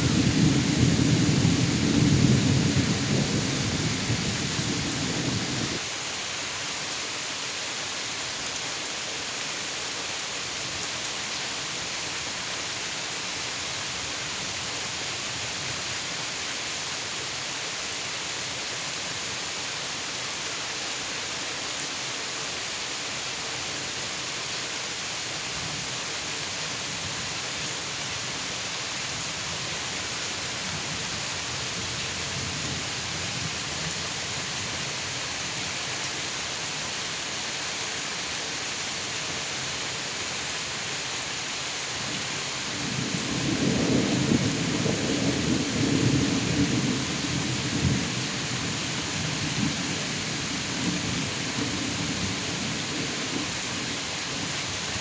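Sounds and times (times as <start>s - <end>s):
thunder rumble: 0.0s - 5.8s, 42.8s - 49.7s
steady rain: 0.0s - 55.0s.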